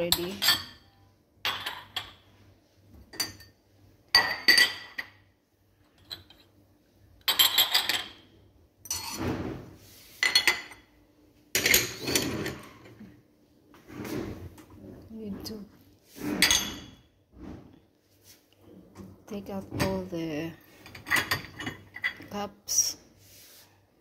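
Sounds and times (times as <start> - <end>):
dishes clinking: 0.1 - 2.3, 3.1 - 5.2, 7.2 - 9.3, 10.2 - 10.9, 16.3 - 17.1, 20.8 - 22.3.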